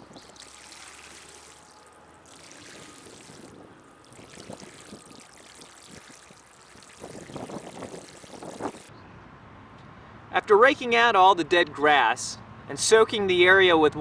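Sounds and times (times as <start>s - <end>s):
water pouring onto lawn: 0.0s - 8.9s.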